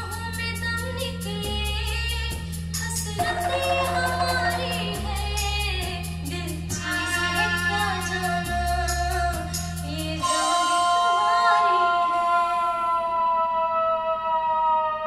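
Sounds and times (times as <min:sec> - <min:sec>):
music beat with deep bass: 0:00.1 - 0:10.3
person singing: 0:03.2 - 0:09.4.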